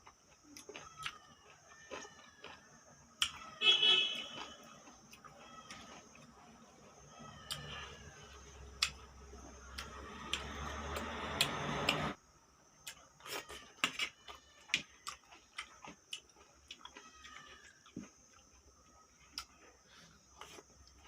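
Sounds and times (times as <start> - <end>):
person chewing with mouth clicks: 8.8 - 9.1, 12.8 - 21.0.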